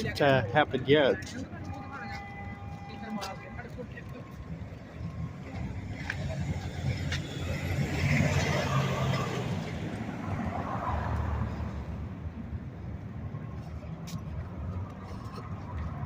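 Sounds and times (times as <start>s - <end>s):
vehicle passing: 3.8s - 12.4s.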